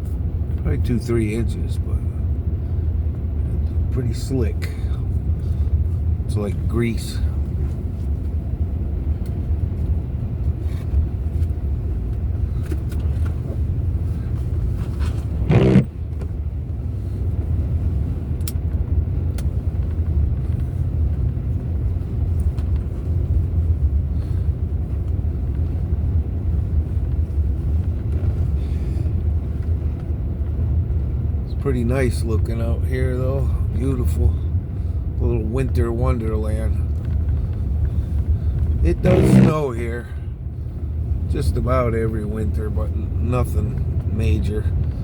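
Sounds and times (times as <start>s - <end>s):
tyres on snowy road: 0.0s - 45.0s
vehicle rumble from inside cabin: 0.0s - 45.0s
brief loud sound: 39.0s - 39.6s.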